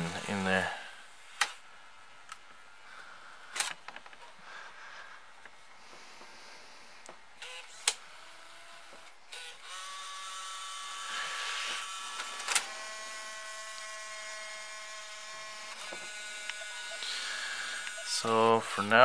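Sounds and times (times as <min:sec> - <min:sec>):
small motor and gears whirring: 0:07.4 - 0:19.0.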